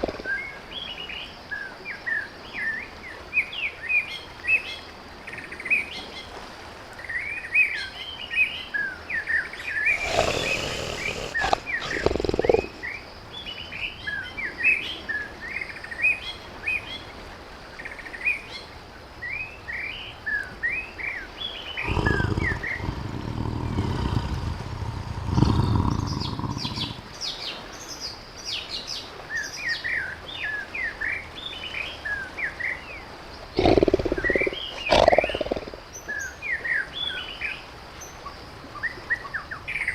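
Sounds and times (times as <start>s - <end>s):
tiger growling: 0.0s - 0.4s, 9.6s - 13.0s, 21.8s - 27.2s, 33.6s - 35.9s
small birds chirping: 8.5s - 14.0s, 21.6s - 28.0s, 33.5s - 36.4s.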